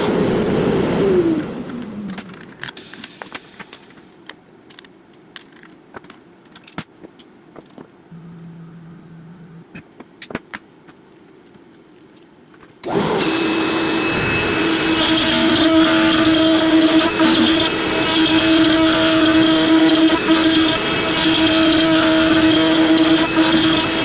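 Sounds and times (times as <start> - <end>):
router spindle whining: 12.8 - 24.0.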